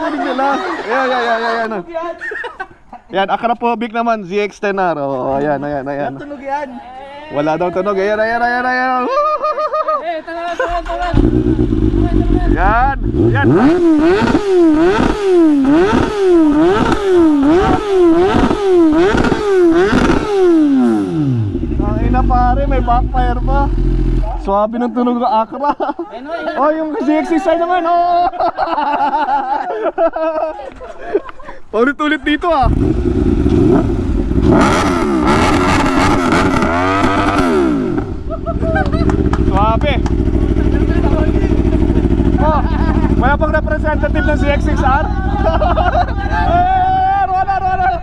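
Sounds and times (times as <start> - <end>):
motorcycle idling: 10.6 - 24.6, 32.6 - 34.8, 36.4 - 48.0
sport bike engine revving: 10.7 - 24.5, 32.6 - 47.8.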